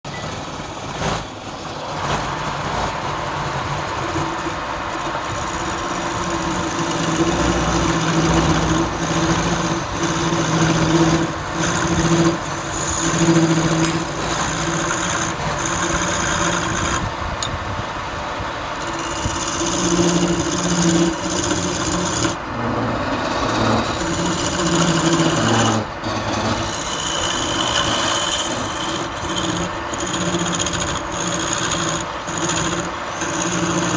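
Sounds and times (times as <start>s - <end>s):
lathe motor hum: 1.6s - 33.9s
lathe tool scraping wood: 2.0s - 17.2s, 18.7s - 33.9s.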